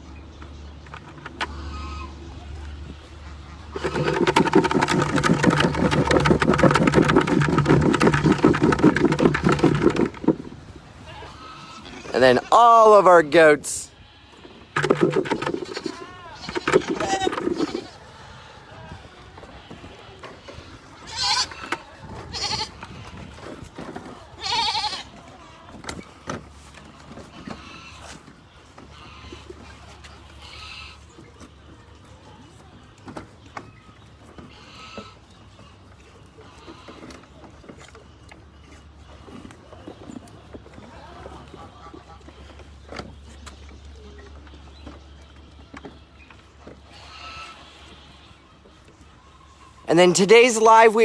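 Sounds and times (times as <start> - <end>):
goats bleating: 1.5 - 2.2, 11.0 - 23.2, 24.1 - 25.6, 27.2 - 28.2, 28.9 - 31.1, 34.5 - 37.4, 46.8 - 48.4.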